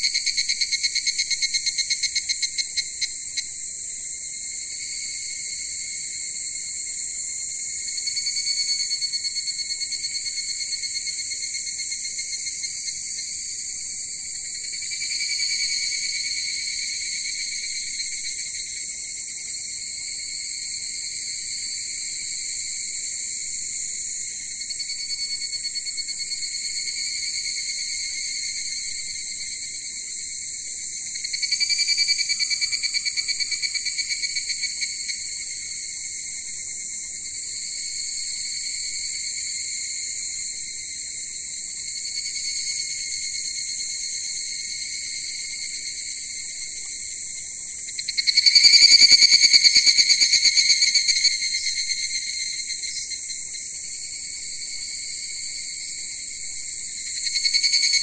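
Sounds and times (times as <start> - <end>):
crickets trilling: 0.0 - 58.0.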